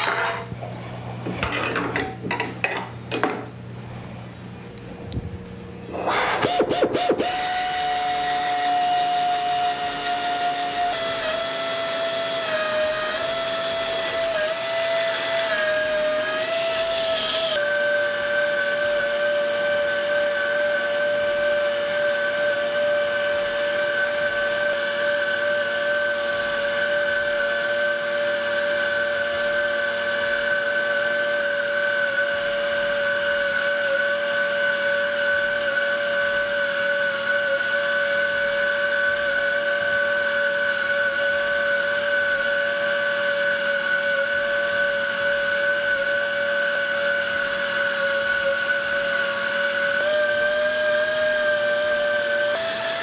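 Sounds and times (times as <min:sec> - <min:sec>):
pneumatic air motor whine: 0:03.7 - 0:53.0
bits cutting pipe: 0:06.0 - 0:17.7.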